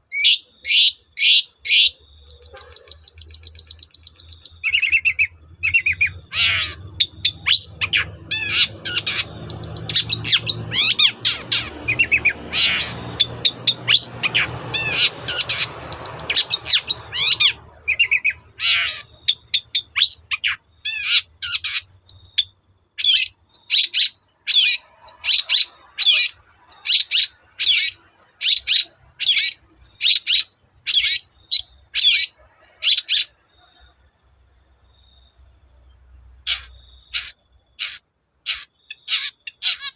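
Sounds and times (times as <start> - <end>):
short sharp bird calls: 0.0 - 22.4, 36.4 - 39.9
bird chattering song: 0.0 - 33.9, 36.4 - 39.9.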